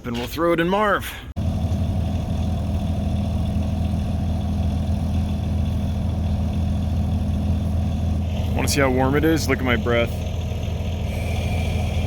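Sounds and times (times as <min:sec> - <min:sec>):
vehicle engine idling: 0:01.4 - 0:12.0.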